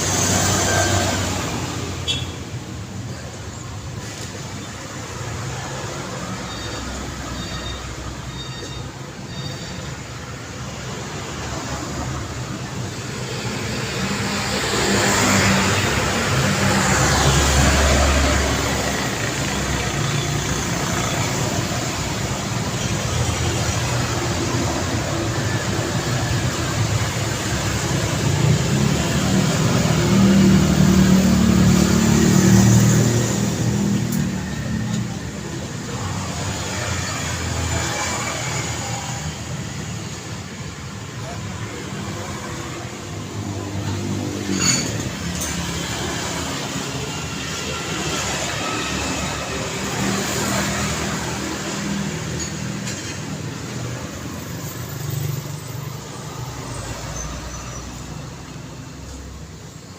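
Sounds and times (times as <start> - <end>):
vehicles passing on road: 0.0 - 59.9
loud vehicle passing: 11.0 - 40.0.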